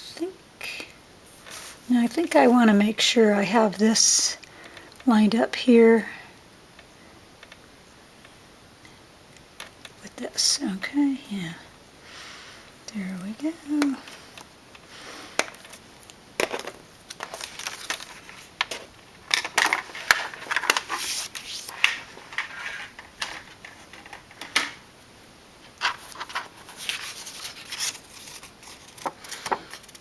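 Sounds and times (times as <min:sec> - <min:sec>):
cardstock scraping and rubbing: 0:19.8 - 0:24.1, 0:25.8 - 0:30.0.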